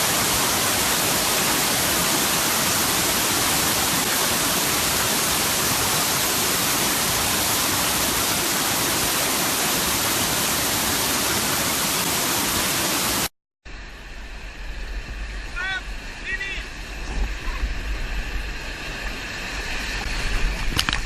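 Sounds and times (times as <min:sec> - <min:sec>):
waterfall rushing: 0:00.0 - 0:13.3.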